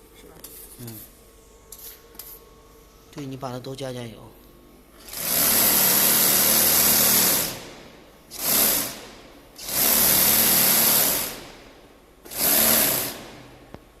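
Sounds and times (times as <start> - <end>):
sewing machine whirring: 5.0 - 13.6.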